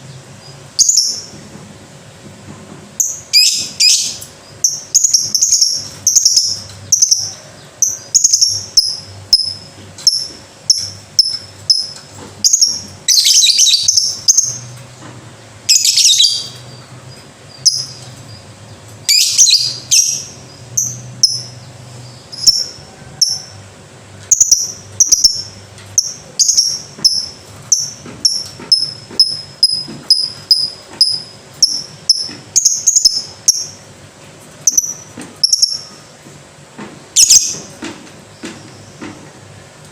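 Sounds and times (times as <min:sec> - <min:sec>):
lovebird chirping: 0:03.0 - 0:14.6, 0:15.7 - 0:16.8
lovebird rattling trills: 0:24.3 - 0:33.8.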